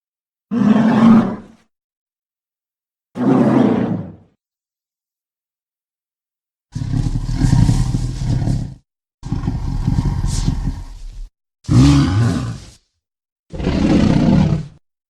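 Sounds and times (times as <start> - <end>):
giant monster roar: 6.7 - 11.1, 11.7 - 12.8, 13.5 - 14.8.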